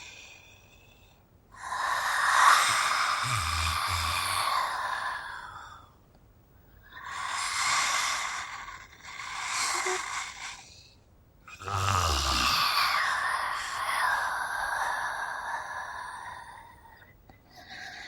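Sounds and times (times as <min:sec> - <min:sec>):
raspy breathy groans: 0:00.0 - 0:05.9, 0:11.5 - 0:17.0.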